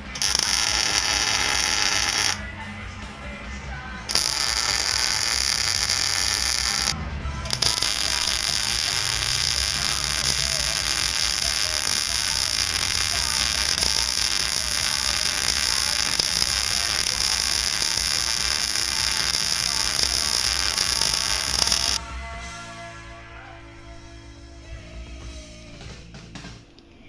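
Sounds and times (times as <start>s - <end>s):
welder arc crackling hiss: 0.0s - 2.4s, 4.1s - 22.0s.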